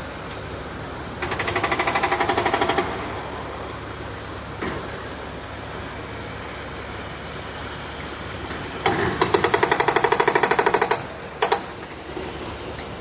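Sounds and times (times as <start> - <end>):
diesel engine hum: 0.0 - 13.0
hydraulic breaker hammering: 1.2 - 3.2, 8.8 - 11.7.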